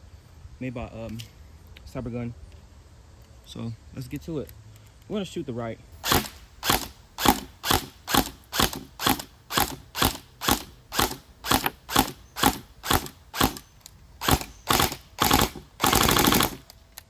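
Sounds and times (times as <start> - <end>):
airsoft rifle firing single shots: 6.0 - 16.7.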